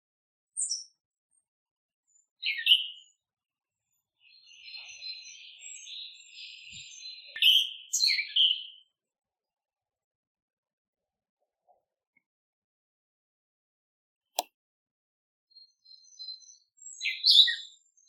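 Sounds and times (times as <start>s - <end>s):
songbirds chirping and twittering: 0.4s - 9.8s, 15.4s - 18.0s.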